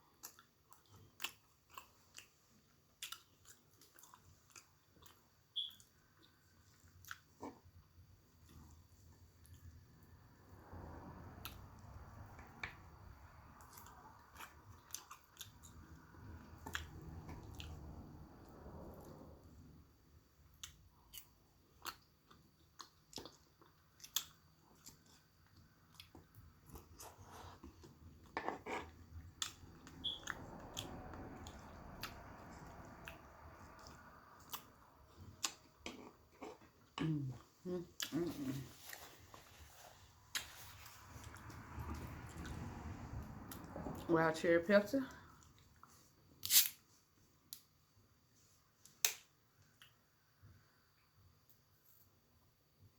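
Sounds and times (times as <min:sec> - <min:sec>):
soft chewing: 0:00.0 - 0:10.2, 0:11.4 - 0:19.6, 0:20.4 - 0:42.7.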